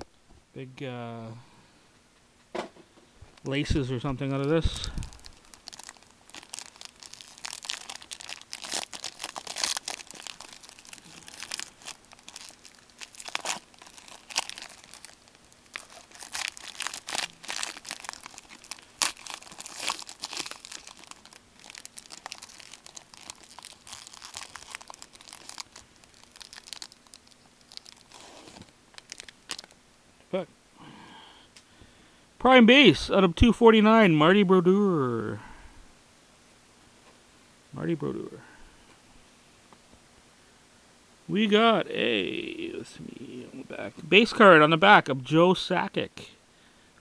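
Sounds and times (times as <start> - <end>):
foil wrapper tearing and crinkling: 4.8 - 29.8.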